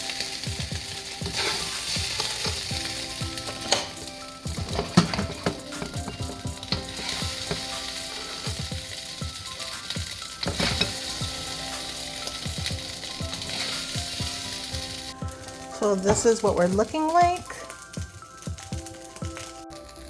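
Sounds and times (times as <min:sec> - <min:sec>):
hissing pan: 0:00.0 - 0:20.0
spatula scraping a pan: 0:00.8 - 0:08.7, 0:09.4 - 0:14.7.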